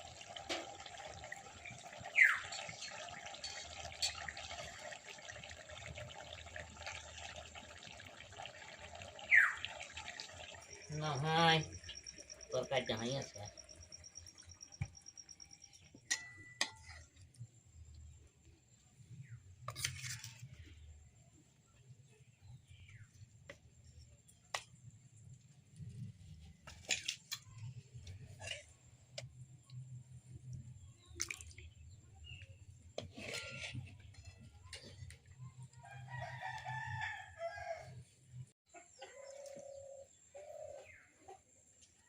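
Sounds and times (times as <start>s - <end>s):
utensils clinking on a pot: 0.1s - 7.4s, 15.8s - 17.2s, 33.0s - 35.3s
faint bird chirps: 2.0s - 2.9s, 9.2s - 16.6s.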